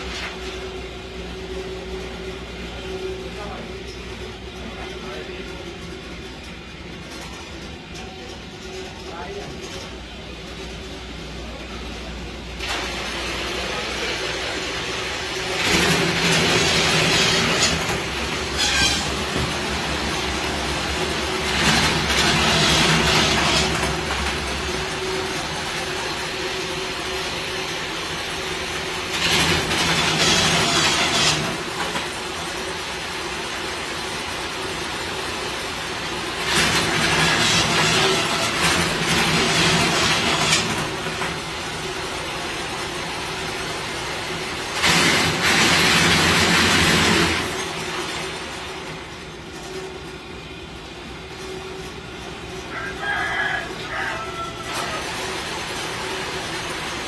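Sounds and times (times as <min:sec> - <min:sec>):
machine humming: 0:00.0 - 0:57.0.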